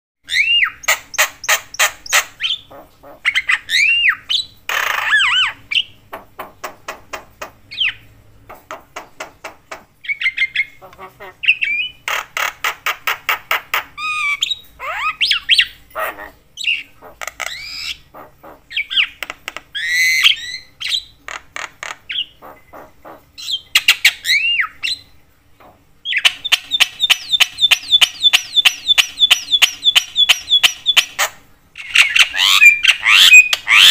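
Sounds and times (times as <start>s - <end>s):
bird chattering song: 0.2s - 25.1s, 26.0s - 33.9s.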